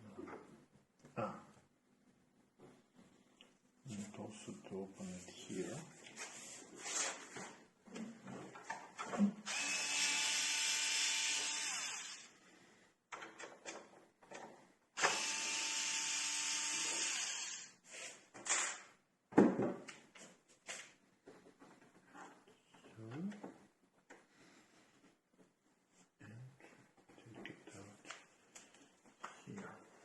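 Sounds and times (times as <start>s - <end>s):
cordless electric screwdriver running: 9.5s - 12.3s, 15.0s - 17.8s.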